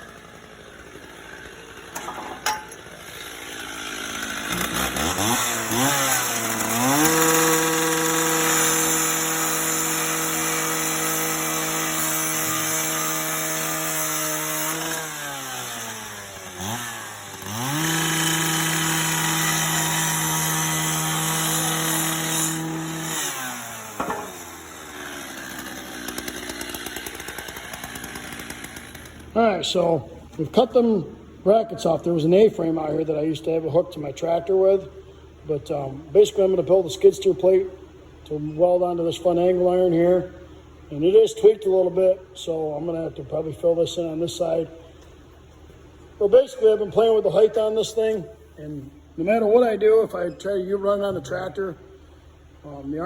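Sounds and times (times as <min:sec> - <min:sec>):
angle grinder cutting steel: 0:00.0 - 0:29.4.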